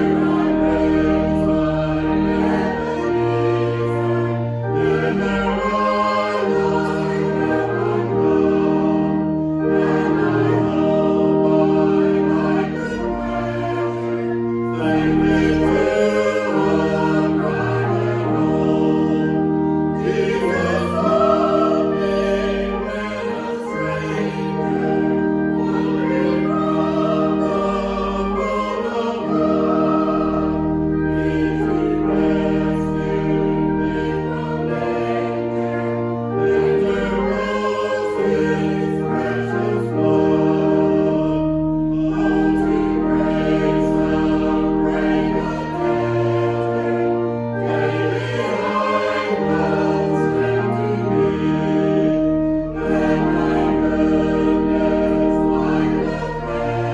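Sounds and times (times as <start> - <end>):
held accompaniment chords: 0.0 - 56.9
voices singing a hymn: 0.0 - 56.9.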